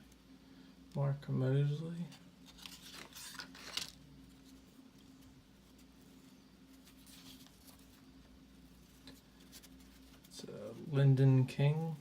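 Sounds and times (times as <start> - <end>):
low steady room hum: 0.0 - 12.0
cardboard cards scraping and rustling: 2.1 - 4.7, 6.8 - 8.1.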